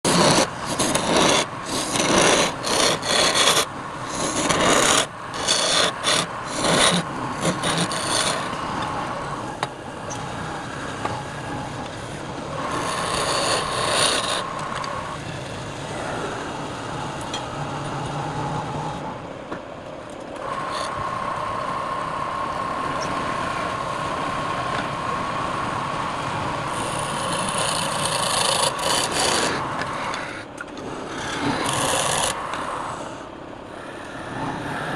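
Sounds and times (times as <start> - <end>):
turning tool cutting wood: 0.0 - 9.0, 12.6 - 15.0, 26.7 - 30.4, 31.0 - 32.5
lathe whine: 0.0 - 34.9.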